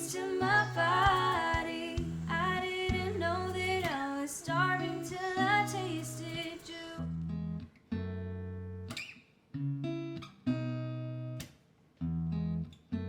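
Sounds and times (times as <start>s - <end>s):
woman singing pop song: 0.0s - 7.1s
acoustic guitar: 0.0s - 13.0s.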